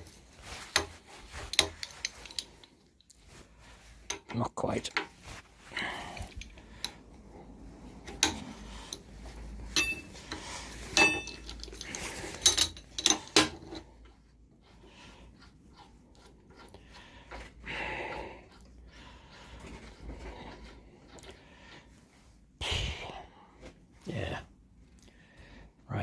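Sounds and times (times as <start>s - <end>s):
quiet handling noises: 0.0s - 14.8s
metal tools clanking: 8.0s - 13.9s.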